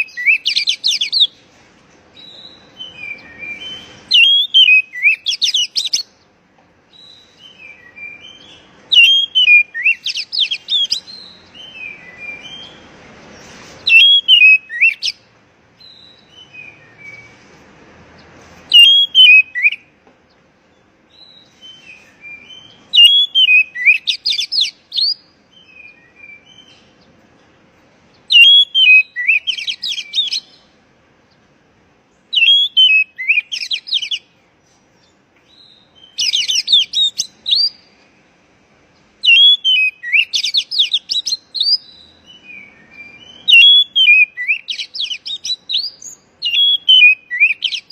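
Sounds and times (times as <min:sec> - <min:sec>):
bird singing whistles: 0:00.0 - 0:01.4, 0:02.2 - 0:06.1, 0:06.9 - 0:12.8, 0:13.8 - 0:15.2, 0:15.8 - 0:17.4, 0:18.7 - 0:19.9, 0:21.1 - 0:26.9, 0:28.3 - 0:30.6, 0:32.3 - 0:34.3, 0:35.5 - 0:38.0, 0:39.2 - 0:47.9.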